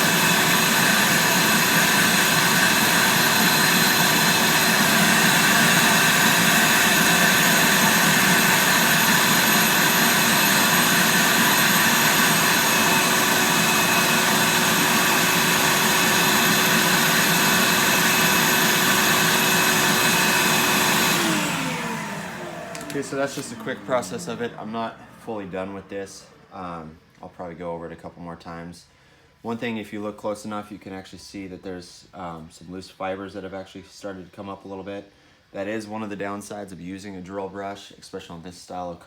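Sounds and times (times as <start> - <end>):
vacuum cleaner whining: 0.0 - 27.0.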